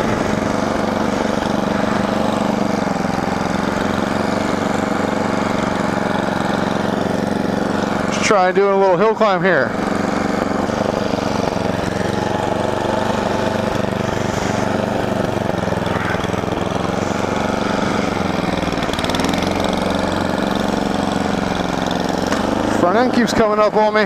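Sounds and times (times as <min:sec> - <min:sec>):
snowblower engine running: 0:00.0 - 0:24.0.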